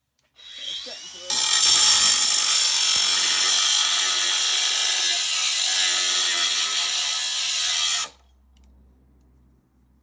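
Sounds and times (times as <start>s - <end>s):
grinder cutting steel: 0.4s - 8.2s.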